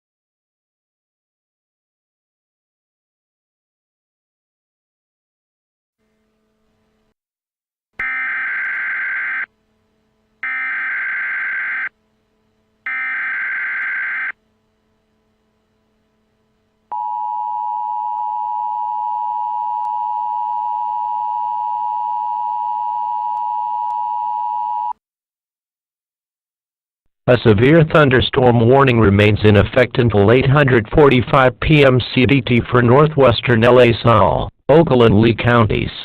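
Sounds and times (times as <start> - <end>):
harsh digital data bursts: 8.0 - 9.5, 10.4 - 11.9, 12.9 - 14.4
two-tone attention signal: 8.0 - 9.5, 16.9 - 24.9.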